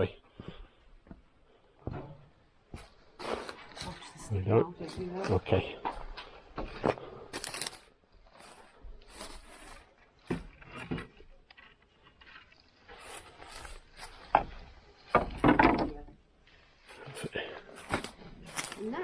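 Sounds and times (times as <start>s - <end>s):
timber dragging scrape: 12.2s - 15.4s
wooden boards knocking: 15.2s - 16.0s.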